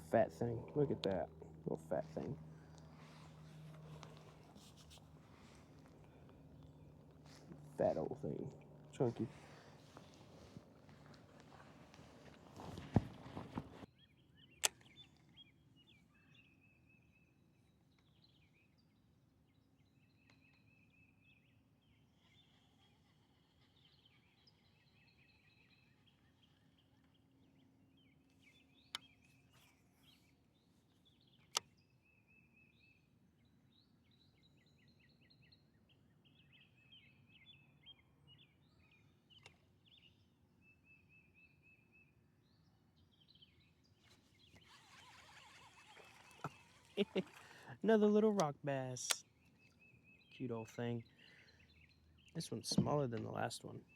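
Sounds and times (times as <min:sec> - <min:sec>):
faint birdsong: 0:00.0 - 0:53.9
sharp clicks: 0:48.3 - 0:49.3.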